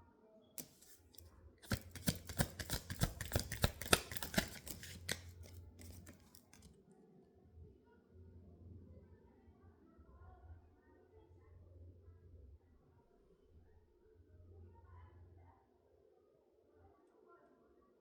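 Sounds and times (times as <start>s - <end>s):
cards shuffling: 0.6s - 6.7s.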